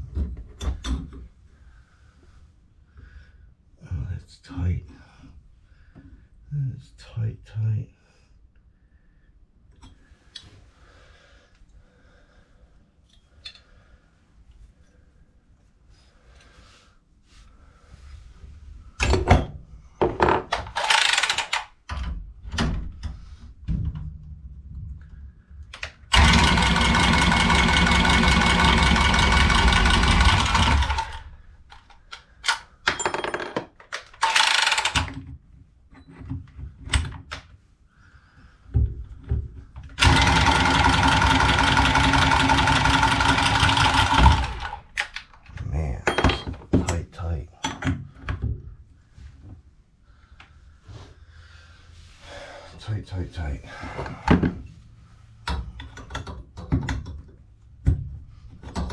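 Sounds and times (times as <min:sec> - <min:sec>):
press tool motor running: 0:26.1 - 0:31.2, 0:34.2 - 0:35.1, 0:40.0 - 0:44.8
tools and pipe fittings clattering: 0:30.6 - 0:35.3, 0:46.0 - 0:47.0.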